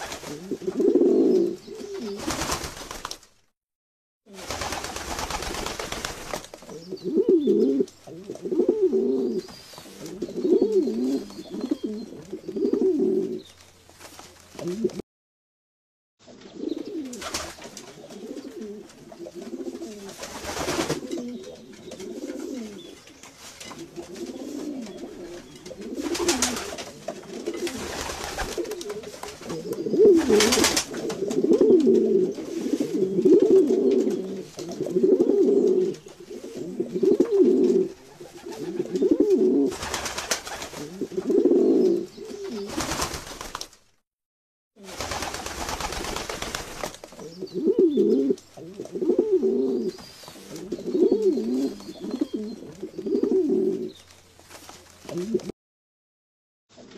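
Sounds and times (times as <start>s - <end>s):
pigeons cooing: 0.0s - 2.4s, 6.7s - 13.5s, 14.6s - 15.0s, 16.3s - 23.0s, 23.8s - 43.0s, 47.2s - 54.0s, 55.1s - 55.5s.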